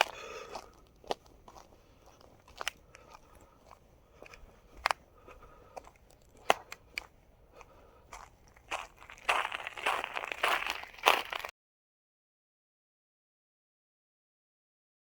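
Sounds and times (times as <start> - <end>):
footsteps crunching on ice: 0.0 - 11.5.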